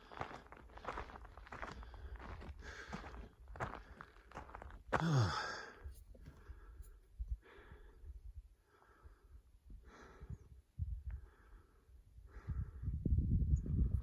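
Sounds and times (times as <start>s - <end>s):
heavy breathing: 0.0s - 4.4s, 5.0s - 10.4s
man sighing: 4.9s - 5.8s.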